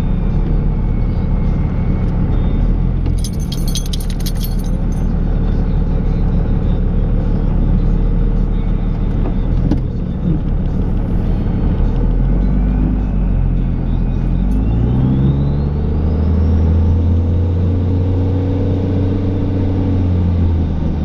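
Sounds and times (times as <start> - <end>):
diesel truck engine under load: 0.0 - 21.0
metallic jingling rattle: 3.2 - 5.1.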